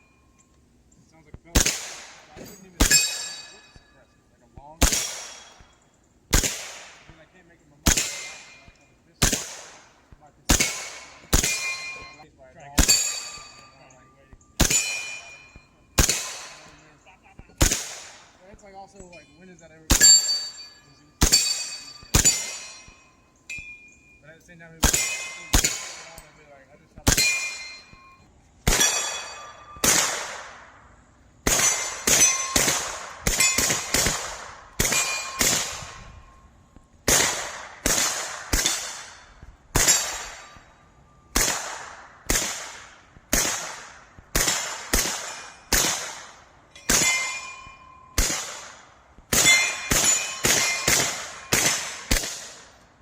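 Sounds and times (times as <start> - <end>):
suppressed gunshots: 1.5 - 3.3, 4.8 - 7.2, 7.8 - 12.2, 14.6 - 18.6, 28.6 - 30.8, 31.4 - 36.1, 37.0 - 40.6, 41.3 - 47.3, 48.2 - 52.8
steel target ringing: 1.6 - 5.9, 6.8 - 30.1, 31.5 - 36.6, 38.3 - 41.4, 44.8 - 52.8.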